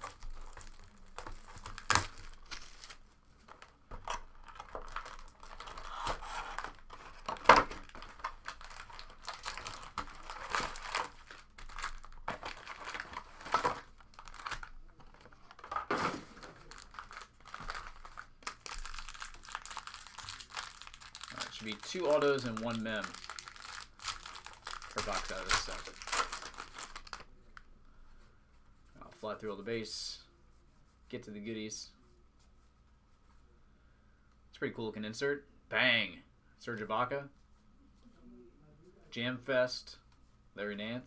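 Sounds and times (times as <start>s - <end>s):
plastic wrapping crinkling and tearing: 0.0s - 27.3s.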